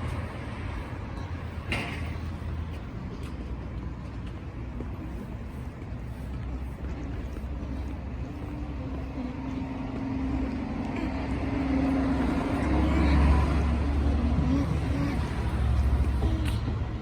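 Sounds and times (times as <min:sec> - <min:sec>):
vehicle engine rumble passing: 0:00.0 - 0:17.0.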